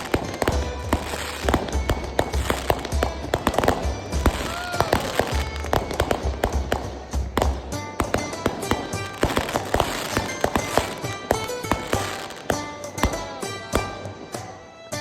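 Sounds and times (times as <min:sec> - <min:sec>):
music with pulsing bass: 0:00.0 - 0:11.0
firecrackers banging: 0:00.0 - 0:15.0.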